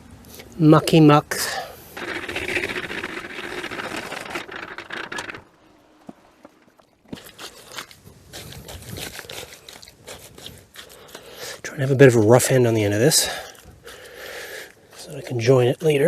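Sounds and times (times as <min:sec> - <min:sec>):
hand tool scraping wet concrete: 0:02.0 - 0:11.9.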